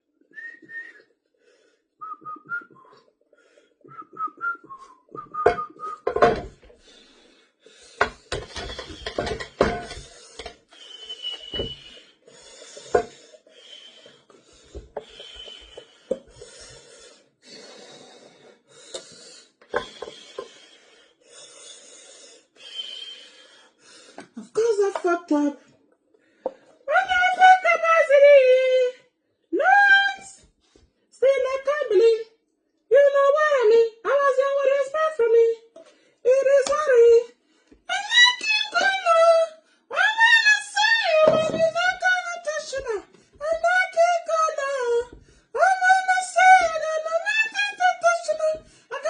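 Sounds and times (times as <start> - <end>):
short whistle-like notes: 10.8 - 12.1.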